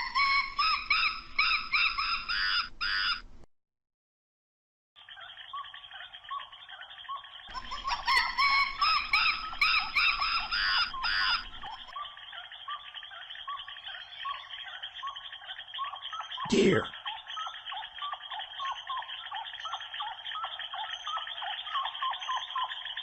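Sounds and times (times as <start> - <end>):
chorus of chirping animal calls: 0.0 - 3.2, 5.0 - 23.0.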